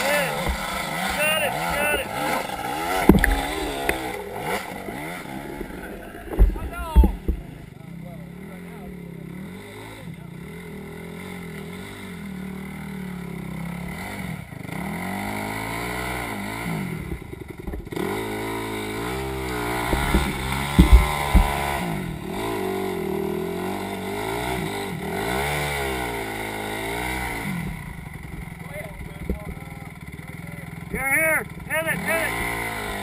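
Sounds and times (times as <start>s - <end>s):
off-road vehicle engine revving: 0.0s - 33.0s
vehicle banging over rock: 2.0s - 7.8s, 19.7s - 22.1s.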